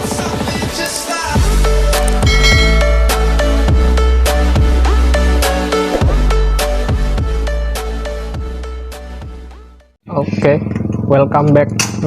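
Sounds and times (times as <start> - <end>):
heavy electronic bass line: 1.4 - 8.8
held synth notes: 2.0 - 5.4.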